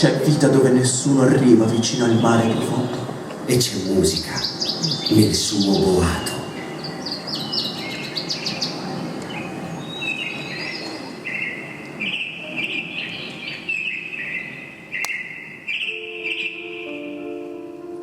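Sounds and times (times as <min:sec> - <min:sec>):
small birds chirping and trilling: 0:03.6 - 0:17.1.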